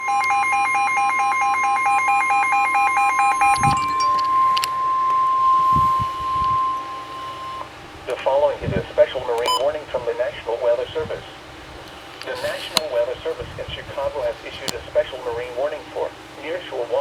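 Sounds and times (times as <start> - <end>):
alarm tone alternating low and high: 0.0 - 7.9
steady single-pitch alarm tone: 0.0 - 8.2.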